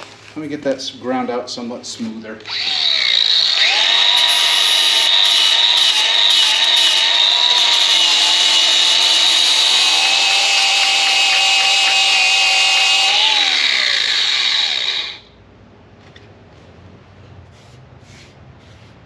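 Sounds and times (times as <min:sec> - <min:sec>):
grinder spinning down: 0:02.4 - 0:15.3
power grinder grinding steel: 0:02.4 - 0:15.3.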